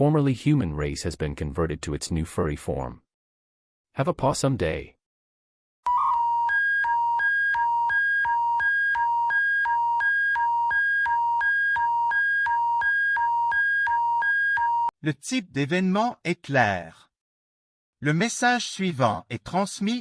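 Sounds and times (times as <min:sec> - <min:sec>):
alternating electronic alert beeps: 0:05.9 - 0:14.9.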